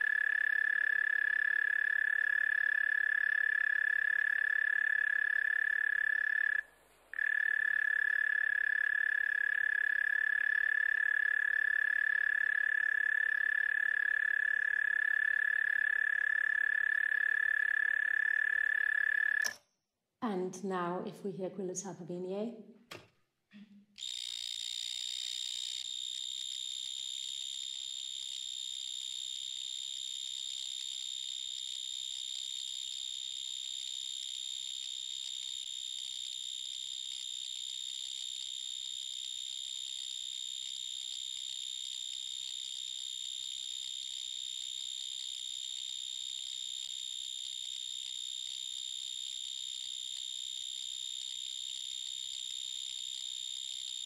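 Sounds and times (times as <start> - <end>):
high steady animal song tone: 0.0 - 19.5.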